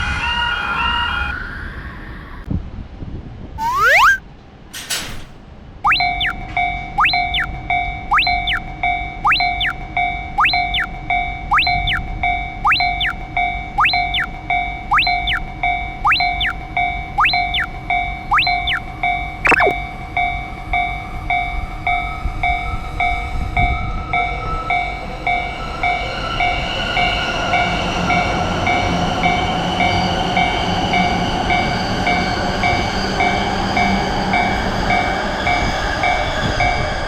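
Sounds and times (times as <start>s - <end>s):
level-crossing bell ringing: 5.9s - 8.6s, 17.2s - 18.8s.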